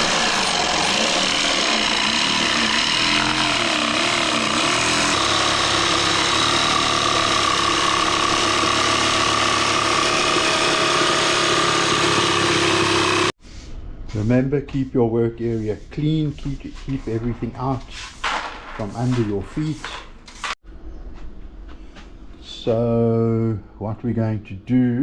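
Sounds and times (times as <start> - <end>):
jigsaw cutting wood: 0.0 - 13.4.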